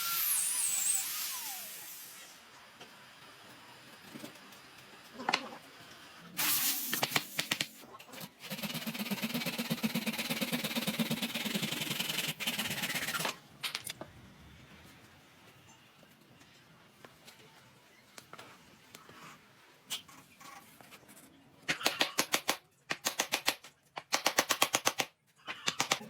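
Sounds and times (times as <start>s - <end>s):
woodworking power tool on wood: 0.0s - 2.9s.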